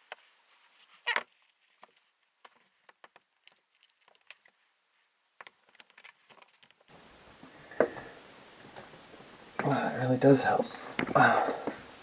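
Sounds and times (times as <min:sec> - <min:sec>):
faint steady hiss: 0:00.0 - 0:12.0
rubber tire handling clicks and squeaks: 0:00.9 - 0:04.6.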